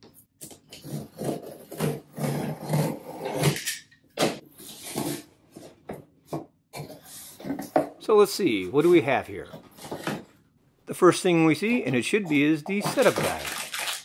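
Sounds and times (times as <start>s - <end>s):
cardboard scraping and tearing: 0.8s - 3.6s, 4.4s - 5.8s, 12.7s - 14.0s.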